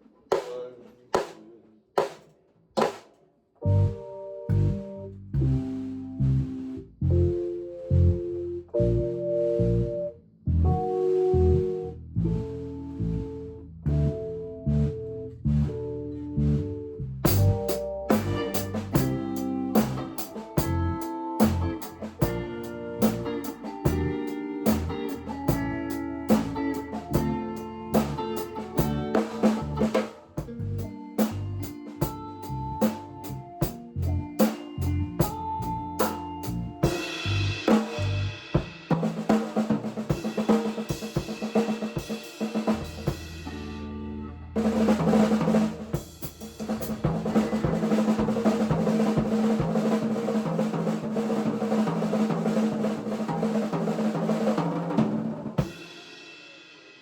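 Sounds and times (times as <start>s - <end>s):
drum kit beat: 0.0s - 3.2s, 17.3s - 43.9s, 44.6s - 57.0s
guitar and bass: 3.6s - 38.4s, 42.6s - 50.3s
cymbals: 36.0s - 39.4s.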